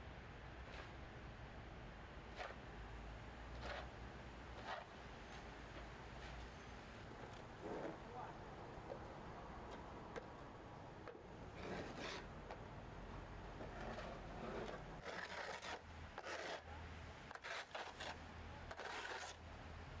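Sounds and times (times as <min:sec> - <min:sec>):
scraping and rubbing strokes: 0:00.6 - 0:01.0, 0:03.5 - 0:03.9, 0:04.5 - 0:05.4, 0:11.6 - 0:12.3, 0:13.6 - 0:16.7, 0:17.3 - 0:19.4.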